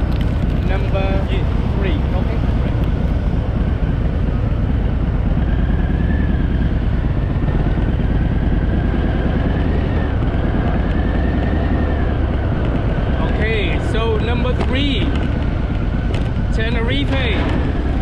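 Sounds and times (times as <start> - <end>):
engine low rumble: 0.0 - 18.0.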